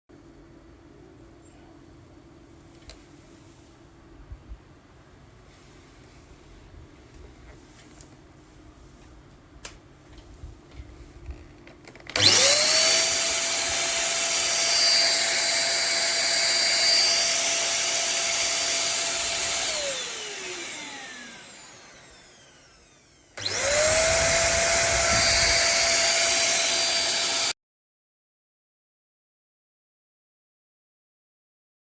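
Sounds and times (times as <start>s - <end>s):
handheld vacuum cleaner whine: 12.1s - 27.6s.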